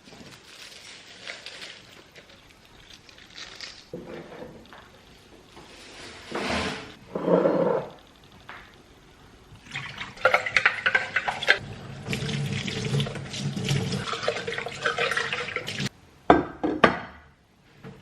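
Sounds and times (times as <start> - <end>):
tap water running into sink: 9.6 - 15.9.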